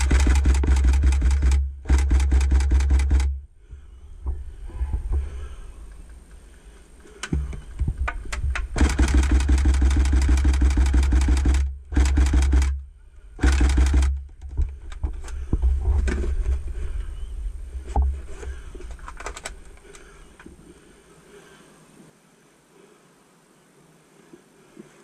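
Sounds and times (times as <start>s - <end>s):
airsoft gun firing bursts: 0.0s - 3.5s, 8.7s - 14.4s.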